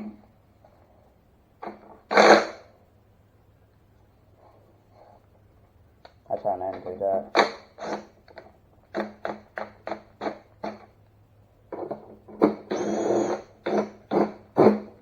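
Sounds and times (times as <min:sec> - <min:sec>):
impact driver bursts: 0:02.1 - 0:02.7, 0:07.3 - 0:08.2, 0:12.4 - 0:14.9.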